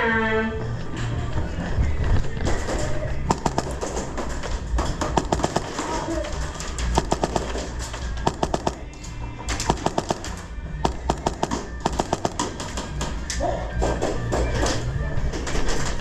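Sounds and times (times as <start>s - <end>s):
airsoft guns firing: 3.3s - 13.3s
rock music on speakers: 6.9s - 15.0s.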